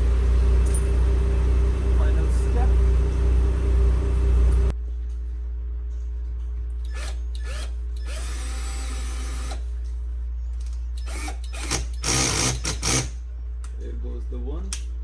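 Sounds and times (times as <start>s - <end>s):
loud rumbling noise: 0.0s - 4.7s
cordless power drill: 11.1s - 13.1s.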